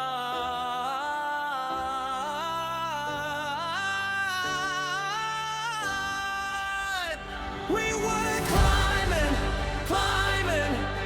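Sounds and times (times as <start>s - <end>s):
low bass line: 8.5s - 11.0s.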